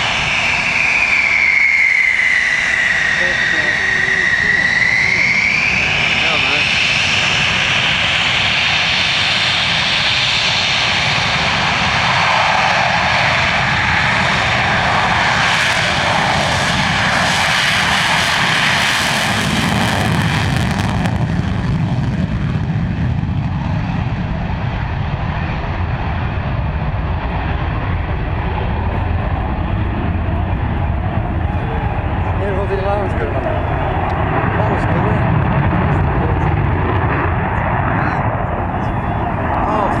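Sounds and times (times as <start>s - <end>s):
aircraft flying past: 0.0s - 40.0s.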